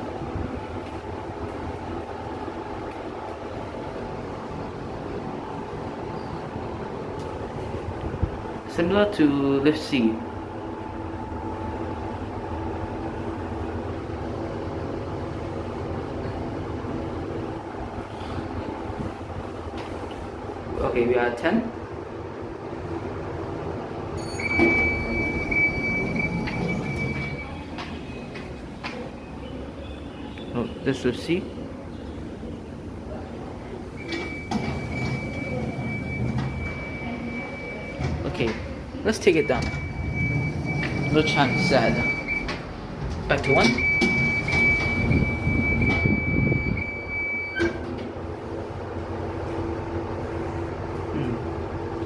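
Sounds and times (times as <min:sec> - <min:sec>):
low lift hum: 0:00.0 - 0:29.7, 0:31.6 - 0:52.0
lift doors sliding open: 0:24.0 - 0:29.2, 0:33.8 - 0:50.7
high electronic beep: 0:24.2 - 0:27.6, 0:39.4 - 0:42.4.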